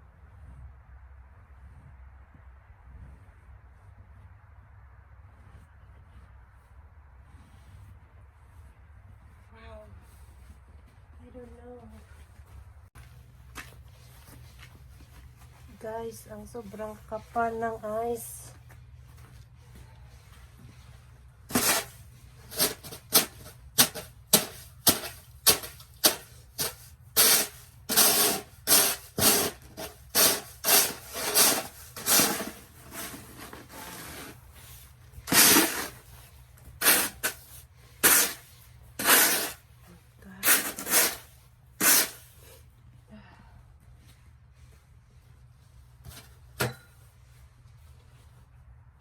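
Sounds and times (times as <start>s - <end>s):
scraping on snow and ice: 20.1s - 42.7s.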